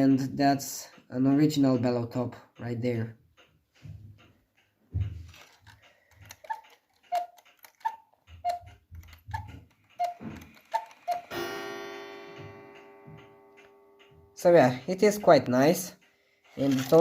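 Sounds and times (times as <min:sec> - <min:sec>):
clock movement clicks and thumps: 0:00.0 - 0:17.0
cuckoo clock calls: 0:06.2 - 0:14.1
gong strike ringing: 0:11.3 - 0:14.7.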